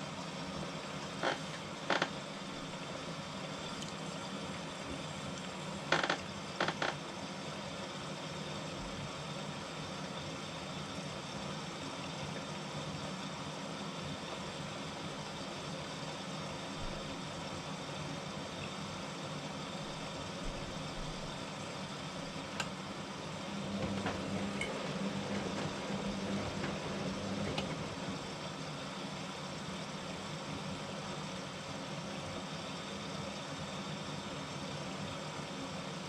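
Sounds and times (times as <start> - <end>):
motor hum: 0.0 - 7.5, 18.8 - 29.6
washing machine running: 0.0 - 36.0.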